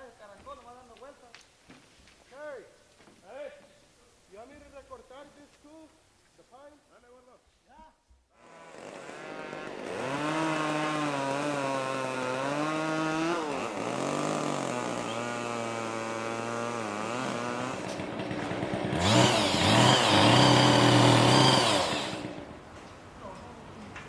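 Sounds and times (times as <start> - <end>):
chainsaw engine revving: 8.4 - 22.6.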